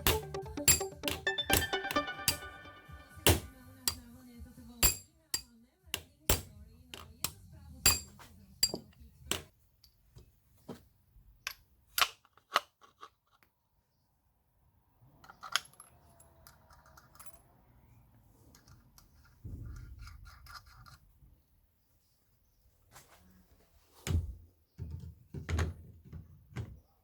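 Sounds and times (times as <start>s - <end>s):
metal parts clicking and clinking: 15.2s - 17.6s.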